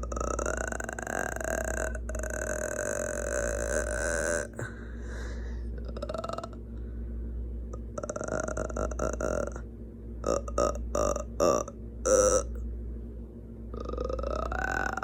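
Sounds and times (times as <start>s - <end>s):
person burping: 0.0s - 4.8s, 5.8s - 6.6s, 7.8s - 9.6s, 10.2s - 12.6s, 13.8s - 15.0s.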